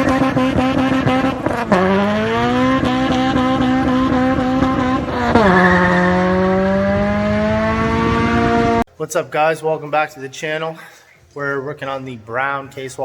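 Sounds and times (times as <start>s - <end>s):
car engine accelerating: 0.0s - 8.9s.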